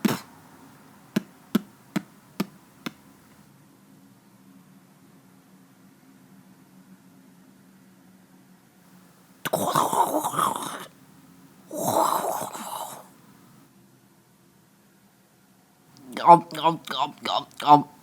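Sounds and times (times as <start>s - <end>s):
man making breathy hissing noises: 0.0s - 0.4s, 9.5s - 10.9s, 11.7s - 13.3s, 16.0s - 18.0s.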